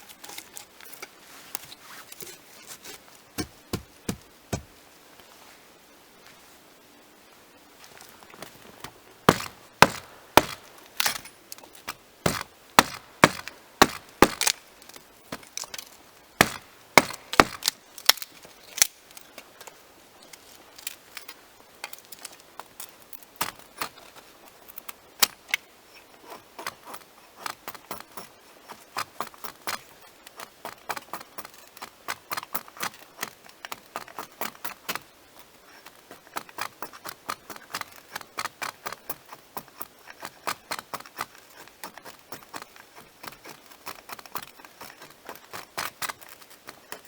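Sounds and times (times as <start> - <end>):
axe chopping wood: 3.4 - 4.7, 9.3 - 11.2, 12.2 - 14.6, 16.4 - 18.2.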